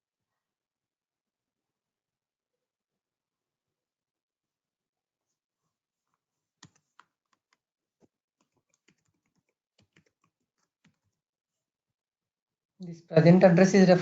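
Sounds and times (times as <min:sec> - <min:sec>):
computer keyboard typing: 0:08.4 - 0:11.1.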